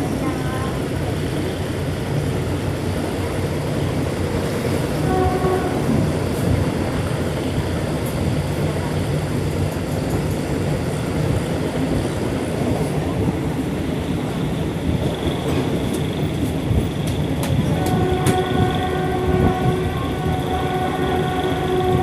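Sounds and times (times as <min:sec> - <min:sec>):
train wheels clattering on rails: 0:00.0 - 0:22.0
train horn chord: 0:05.0 - 0:06.5, 0:17.6 - 0:22.0.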